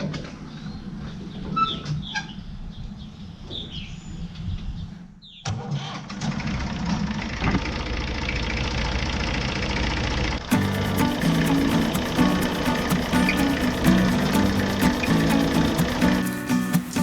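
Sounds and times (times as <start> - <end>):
diesel tractor engine starting: 5.8 - 17.0.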